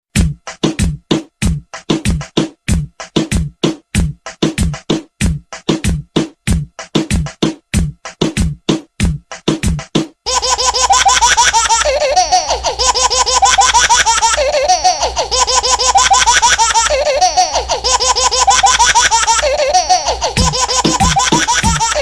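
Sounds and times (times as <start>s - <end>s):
high-pitched laughter: 10.3s - 22.0s.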